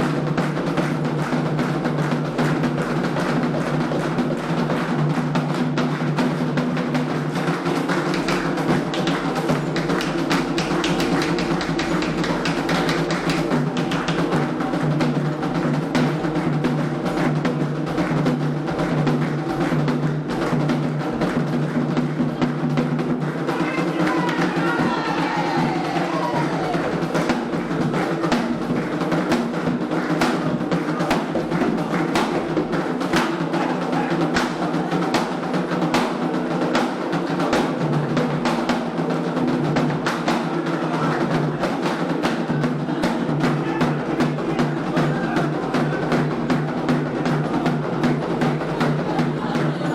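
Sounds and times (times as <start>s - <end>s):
hand drums playing steady rhythm: 0.0s - 49.9s.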